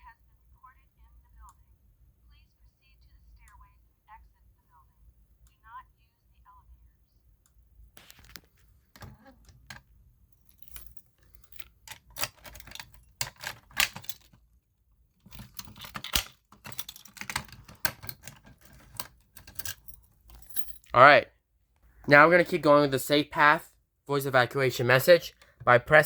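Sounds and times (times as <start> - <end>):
keys jangling and clicking: 10.4 - 14.4, 15.3 - 21.0.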